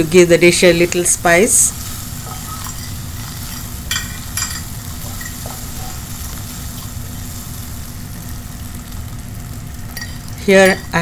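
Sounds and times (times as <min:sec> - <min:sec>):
food sizzling in a frying pan: 0:00.0 - 0:11.0
spatula stirring: 0:01.8 - 0:07.7.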